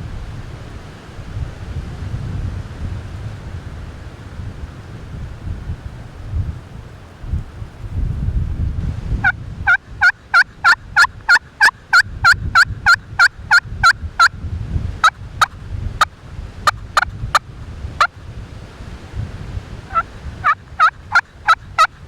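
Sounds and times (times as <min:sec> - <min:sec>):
wind noise on microphone: 0:00.0 - 0:22.0
turkey yelping: 0:09.2 - 0:14.3, 0:19.9 - 0:22.0.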